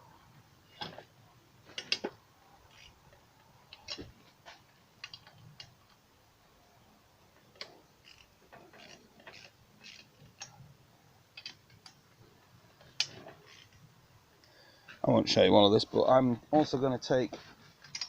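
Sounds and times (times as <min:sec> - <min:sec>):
hand tools clicking and clinking: 0:17.8 - 0:18.0.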